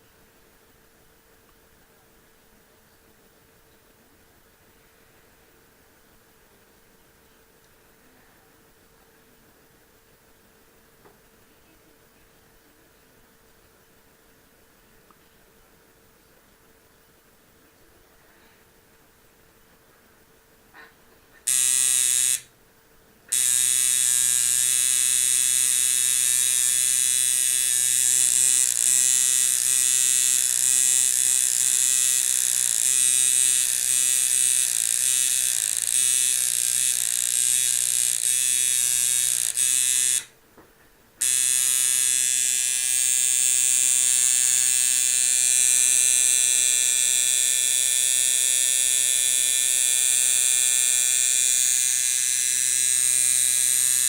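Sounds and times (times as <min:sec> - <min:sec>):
tattoo machine buzzing: 0:21.5 - 0:22.5, 0:23.3 - 0:40.3, 0:41.2 - 0:54.0.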